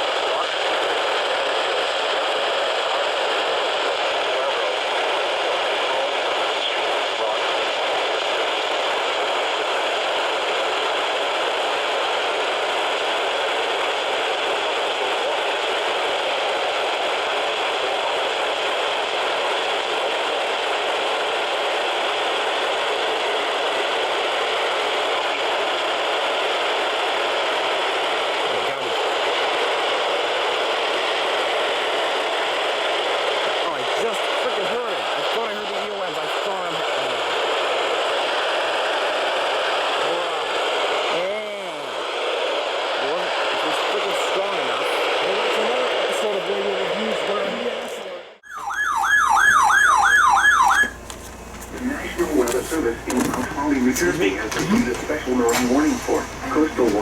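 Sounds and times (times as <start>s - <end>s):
radio static hiss: 0.0s - 48.4s, 49.9s - 57.0s
radio click: 49.3s - 57.0s.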